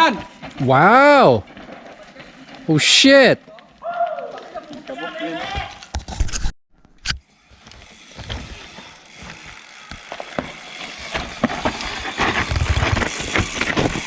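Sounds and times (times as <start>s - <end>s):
tyres rattling over loose dirt: 0.0s - 5.8s, 7.4s - 14.0s
bike freehub ratchet ticking: 7.3s - 11.9s.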